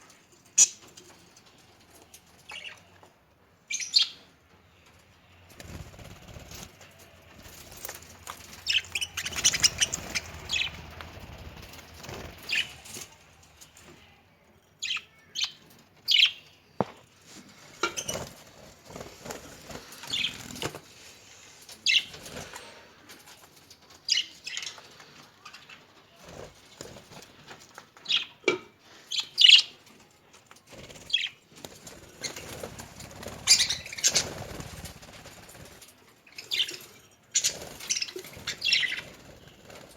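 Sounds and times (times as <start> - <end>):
wing fluttering and rustling: 5.0 - 13.8, 17.2 - 25.2, 29.9 - 39.9
budgerigars chirping: 8.6 - 10.8.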